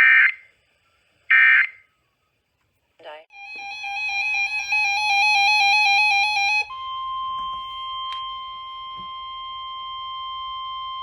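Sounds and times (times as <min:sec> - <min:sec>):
steady high alert tone: 0:03.3 - 0:07.4.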